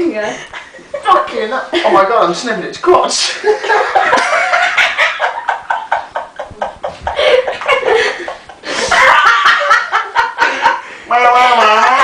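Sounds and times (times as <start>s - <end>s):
person laughing hard: 3.4s - 12.0s.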